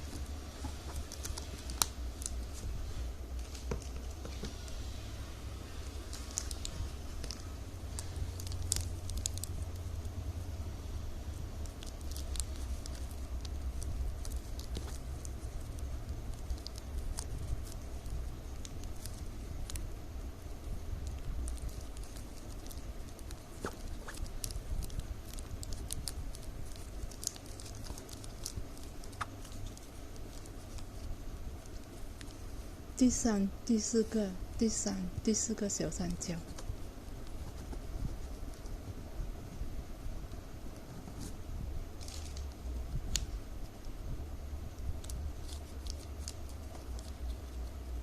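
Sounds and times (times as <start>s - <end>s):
steady low hum: 0.0s - 48.0s
plastic strips crinkling: 5.8s - 33.2s, 41.2s - 43.4s, 44.7s - 48.0s.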